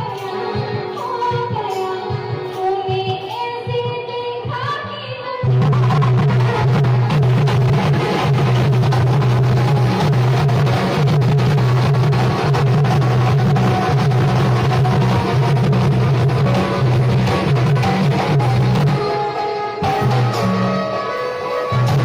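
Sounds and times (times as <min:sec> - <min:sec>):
steady drumming: 0:05.5 - 0:19.2.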